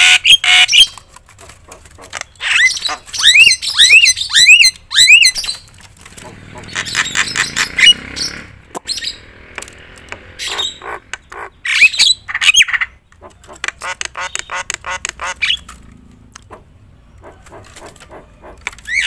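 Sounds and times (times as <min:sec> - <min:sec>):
myna squawking and whistling: 0:02.3 - 0:05.5, 0:10.4 - 0:13.6, 0:17.2 - 0:19.0.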